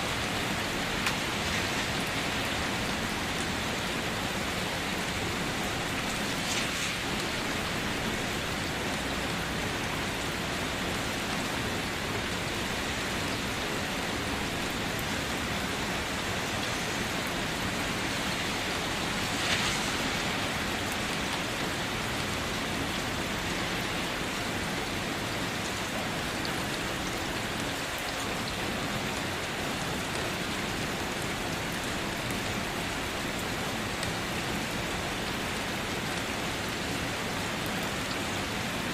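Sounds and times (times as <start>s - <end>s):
light rain pattering: 0.0s - 38.9s
water splash: 5.9s - 8.3s.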